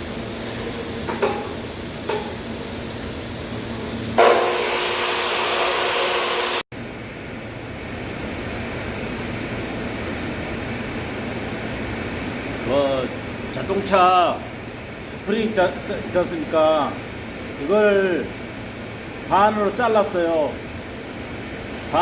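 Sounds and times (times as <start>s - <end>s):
power tool motor whine: 4.2s - 6.6s.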